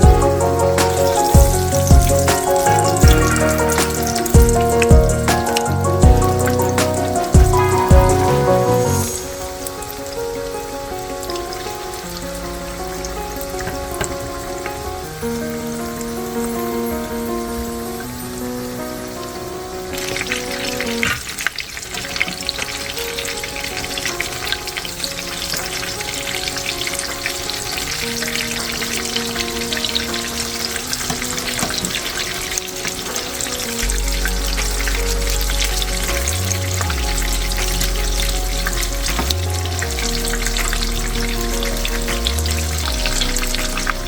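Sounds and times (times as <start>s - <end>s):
deep bass line: 0.0s - 9.1s, 33.8s - 44.0s
background music: 0.0s - 44.0s.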